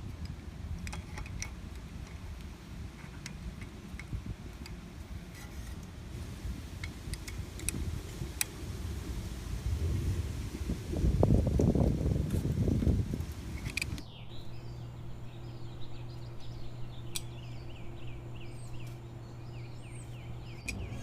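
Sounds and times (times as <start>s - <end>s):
steady low rumble: 6.0s - 21.0s
light sharp clicks: 17.1s - 17.3s.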